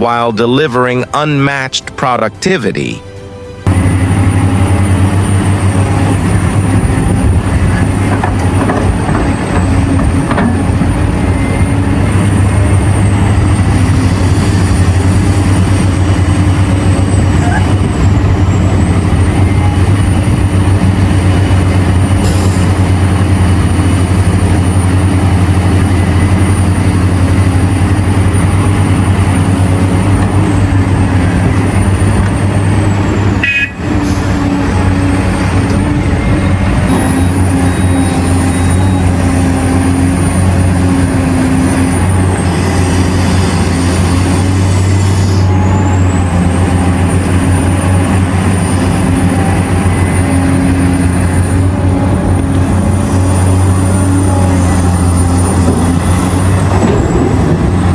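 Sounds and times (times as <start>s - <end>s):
heavy diesel engines running: 0.0s - 57.9s.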